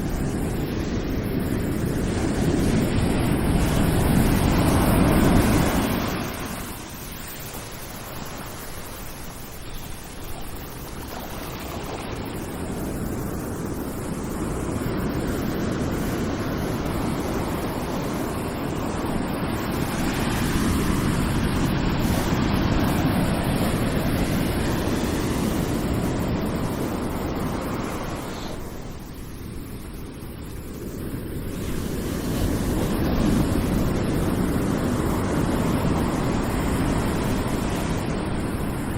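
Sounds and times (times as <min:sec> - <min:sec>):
ocean waves rushing surf: 0:00.0 - 0:30.0, 0:31.2 - 0:38.9.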